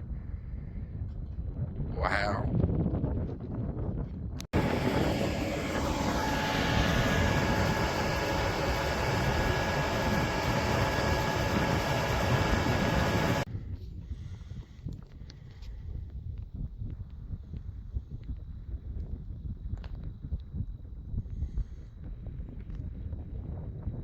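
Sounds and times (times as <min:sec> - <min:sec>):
engine rumbling with whine: 0:04.4 - 0:13.5.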